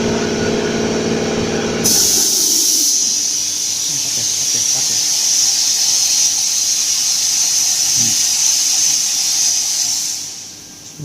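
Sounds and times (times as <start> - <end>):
high-pitched hiss: 1.9 - 10.6.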